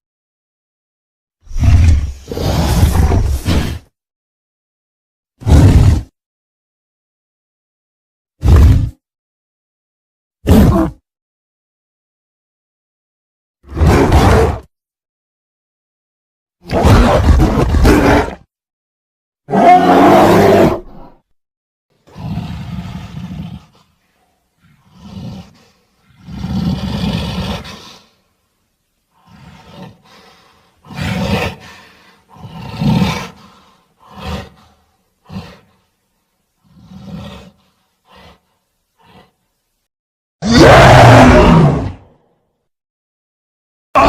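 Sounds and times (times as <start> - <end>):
creature roars: 5.4 - 6.1, 8.4 - 9.0, 13.7 - 14.7, 16.7 - 18.5, 19.5 - 21.2, 22.1 - 23.8, 29.3 - 34.6, 40.4 - 42.2.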